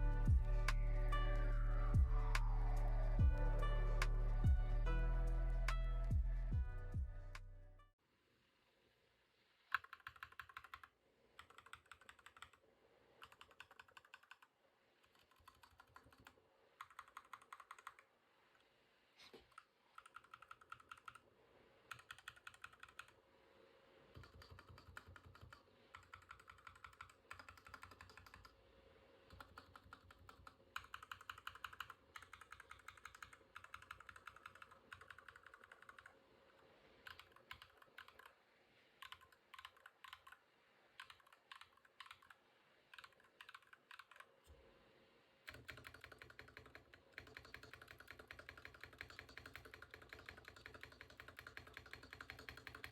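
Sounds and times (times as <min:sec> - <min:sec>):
mechanical keyboard typing: 0:09.7 - 0:12.6, 0:13.2 - 0:18.1, 0:19.5 - 0:21.2, 0:21.9 - 0:23.2, 0:24.1 - 0:28.6, 0:29.3 - 0:36.2, 0:37.0 - 0:38.4, 0:39.0 - 0:40.4, 0:41.0 - 0:44.3, 0:45.5 - 0:52.9.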